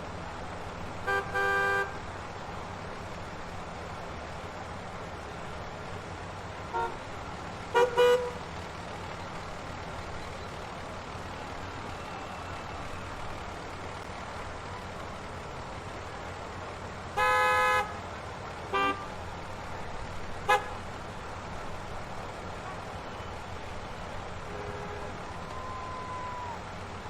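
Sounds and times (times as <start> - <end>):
road traffic hum: 0.0 - 27.0
car horns: 1.0 - 2.1, 6.7 - 7.0, 7.7 - 8.5, 17.2 - 18.0, 18.7 - 19.2, 20.4 - 20.9, 24.4 - 26.5.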